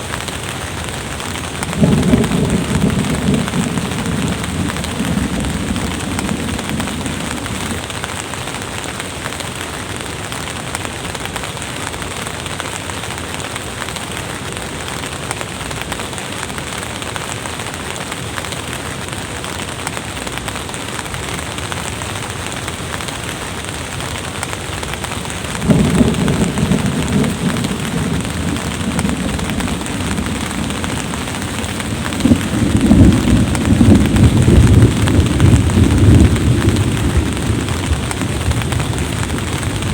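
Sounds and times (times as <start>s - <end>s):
steady rain: 0.0s - 39.9s
rolling thunder: 1.3s - 7.9s, 25.0s - 39.9s.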